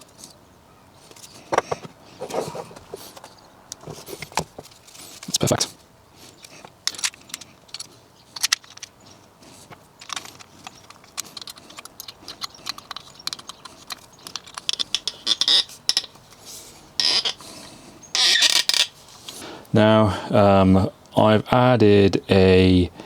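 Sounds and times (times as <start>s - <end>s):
rustling scrapes: 1.0s - 8.8s
small metal parts clicking and rattling: 3.0s - 19.4s.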